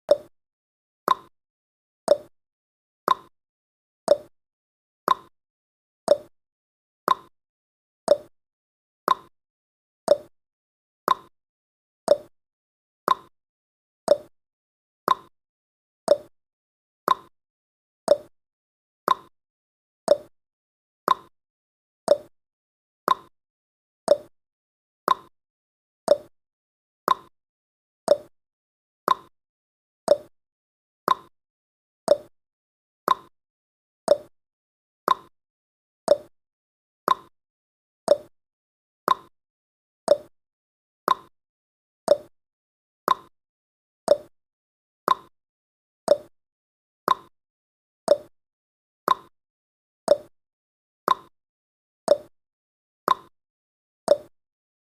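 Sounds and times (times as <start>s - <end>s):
timer ticking: 1.1s - 1.3s, 2.1s - 2.3s, 3.1s - 3.3s, 4.1s - 4.3s, 5.1s - 5.3s, 6.1s - 6.3s, 7.1s - 7.3s, 8.1s - 8.3s, 9.1s - 9.3s, 10.1s - 10.3s, 11.1s - 11.3s, 12.1s - 12.3s, 13.1s - 13.3s, 14.1s - 14.3s, 15.1s - 15.3s, 16.1s - 16.3s, 17.1s - 17.3s, 18.1s - 18.3s, 19.1s - 19.3s, 20.1s - 20.3s, 21.1s - 21.3s, 22.1s - 22.3s, 23.1s - 23.3s, 24.1s - 24.3s, 25.1s - 25.3s, 26.1s - 26.3s, 28.1s - 28.3s, 30.1s - 30.3s, 31.1s - 31.3s, 32.1s - 32.3s, 33.1s - 33.3s, 34.1s - 34.3s, 35.1s - 35.3s, 36.1s - 36.3s, 37.1s - 37.3s, 38.1s - 38.3s, 39.1s - 39.3s, 40.1s - 40.3s, 41.1s - 41.3s, 42.1s - 42.3s, 43.1s - 43.3s, 44.1s - 44.3s, 45.1s - 45.3s, 46.1s - 46.3s, 47.1s - 47.3s, 48.1s - 48.3s, 49.1s - 49.3s, 51.1s - 51.3s.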